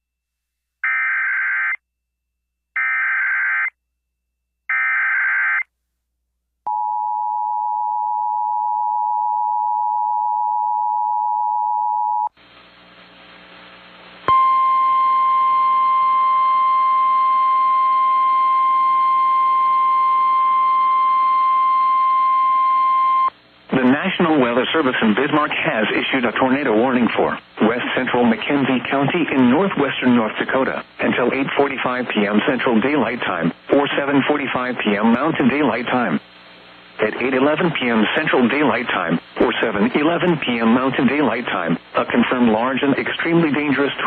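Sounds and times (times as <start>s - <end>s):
radio static: 23.7s - 44.0s.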